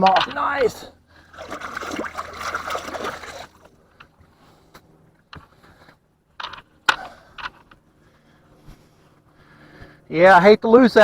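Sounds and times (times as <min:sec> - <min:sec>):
water sloshing beside boat: 0:01.1 - 0:04.6.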